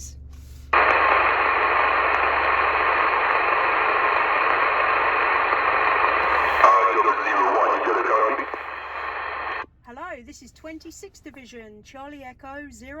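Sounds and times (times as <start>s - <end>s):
radio static hiss: 0.7s - 9.6s.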